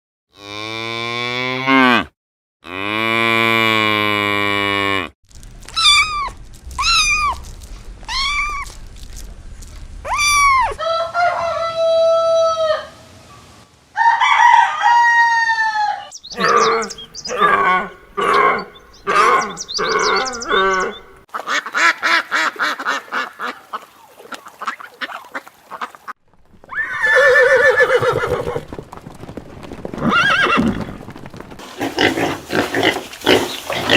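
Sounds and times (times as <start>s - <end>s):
farm animal calls: 5.7s - 7.5s, 8.1s - 8.8s, 15.7s - 26.1s
fowl calls: 10.2s - 26.1s.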